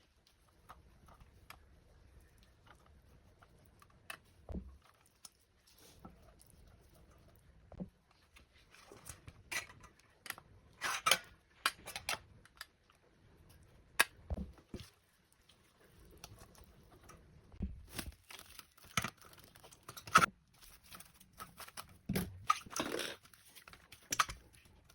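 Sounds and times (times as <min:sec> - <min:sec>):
objects being handled: 0:00.0 - 0:24.9.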